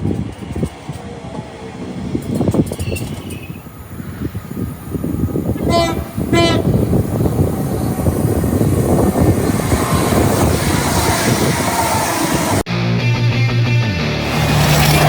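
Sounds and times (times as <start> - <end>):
train wheels rumbling on rail: 0.0 - 12.7, 14.2 - 15.0
train horn blasts: 5.6 - 6.8.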